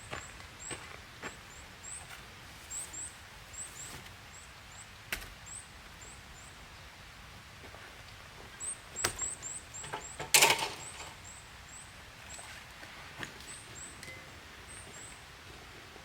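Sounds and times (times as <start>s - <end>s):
faint high chirps: 13.5s - 15.2s.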